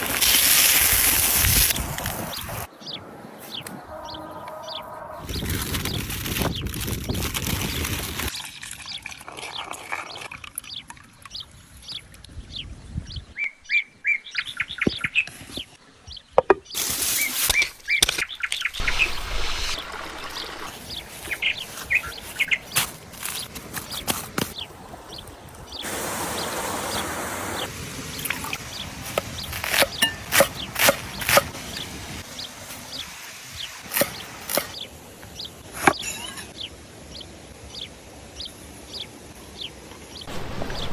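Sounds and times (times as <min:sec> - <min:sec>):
birds chirping: 0:02.2 - 0:06.6, 0:16.1 - 0:27.0, 0:37.8 - 0:40.9
steady hiss: 0:16.8 - 0:23.1, 0:25.8 - 0:29.1, 0:40.3 - 0:40.9.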